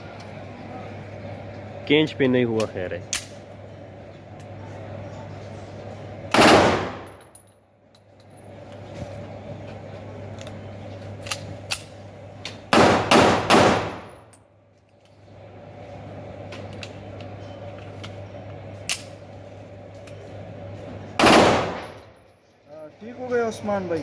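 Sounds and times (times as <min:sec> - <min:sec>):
pistol shots: 0:06.3 - 0:07.1, 0:12.7 - 0:14.1, 0:21.2 - 0:22.0.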